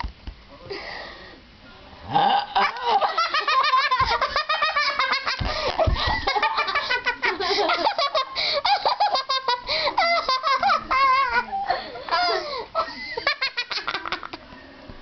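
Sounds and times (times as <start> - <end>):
girls giggling: 2.5 - 14.5.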